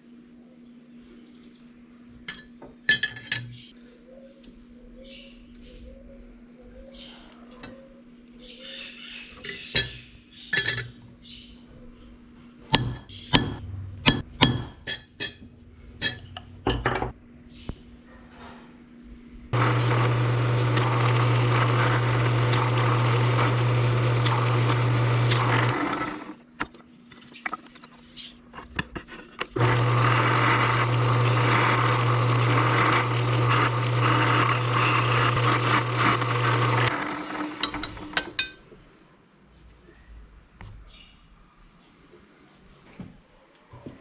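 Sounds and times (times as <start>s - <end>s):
electric power tool motor humming: 19.6s - 26.4s, 29.6s - 38.3s.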